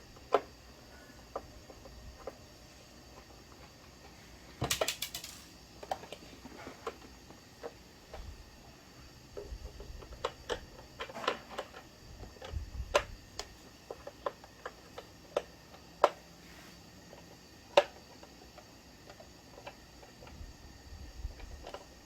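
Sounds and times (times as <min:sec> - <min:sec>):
plastic toy parts clicking: 0:04.6 - 0:06.2.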